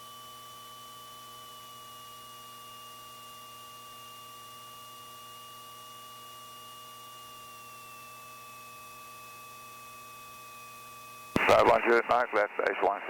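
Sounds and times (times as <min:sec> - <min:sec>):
constant whine tones: 0:10.4 - 0:13.0.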